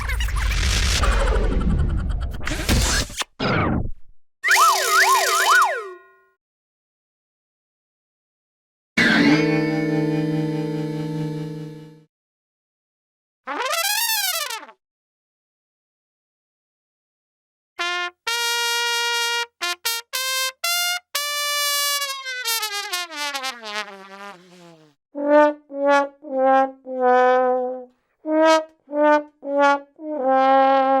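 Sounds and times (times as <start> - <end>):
brass note sliding down: 9.0 - 12.0
comic brass notes: 13.5 - 14.8, 17.8 - 31.0.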